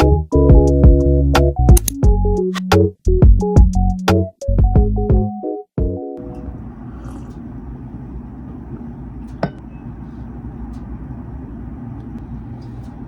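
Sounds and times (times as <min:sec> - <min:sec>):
sharp click: 0:01.7 - 0:02.7
low rumbling background noise: 0:06.2 - 0:13.0.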